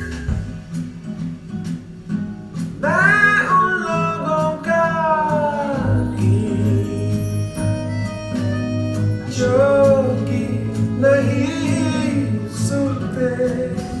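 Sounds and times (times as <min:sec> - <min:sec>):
song with guitar over loudspeakers: 0:00.0 - 0:14.0
person singing: 0:02.8 - 0:14.0
bass line: 0:05.6 - 0:14.0.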